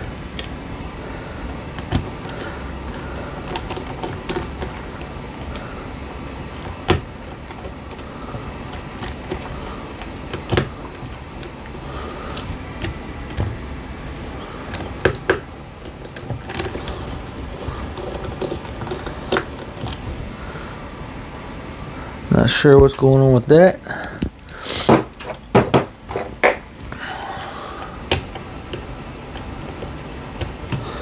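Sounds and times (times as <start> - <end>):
steady background noise: 0.0 - 31.0
clicks and taps of small parts: 1.8 - 11.8.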